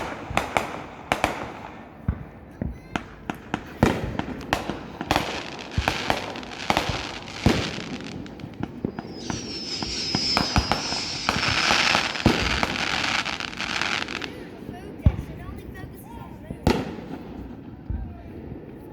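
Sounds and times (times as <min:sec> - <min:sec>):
fireworks bangs and crackling: 0:00.0 - 0:18.9
falling firework whistle: 0:06.9 - 0:14.3.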